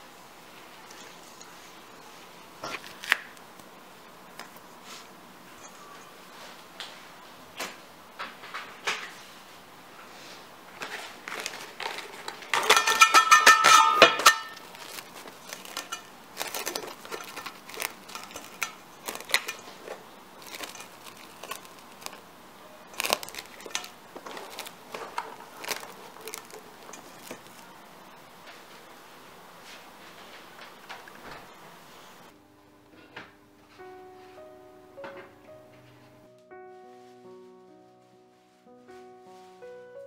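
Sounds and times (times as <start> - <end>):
crinkling: 0.4 - 9.3, 10.0 - 32.3.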